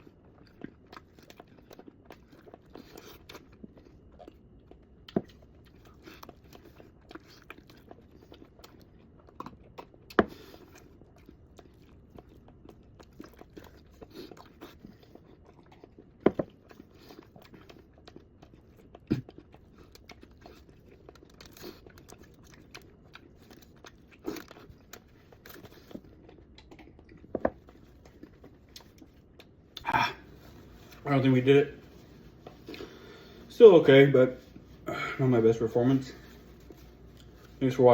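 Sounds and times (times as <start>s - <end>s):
chewing and biting food: 0.0s - 34.8s, 35.6s - 37.9s.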